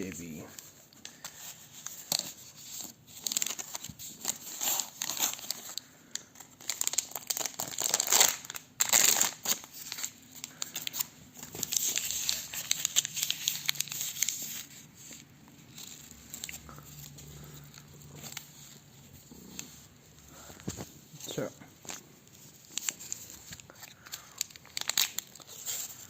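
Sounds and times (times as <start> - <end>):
plastic packaging crinkling: 0.0 - 26.0.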